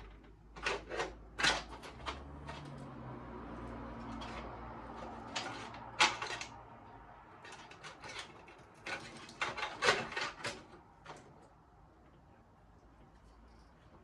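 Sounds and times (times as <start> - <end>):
hard parts clicking and knocking: 0.0 - 3.0, 3.6 - 11.6.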